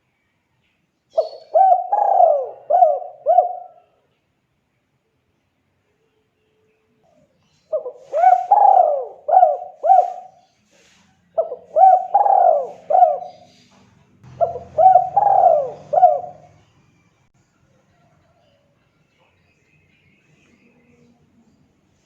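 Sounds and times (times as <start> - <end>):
dove cooing: 1.2 - 4.0, 7.6 - 13.7, 14.3 - 16.7.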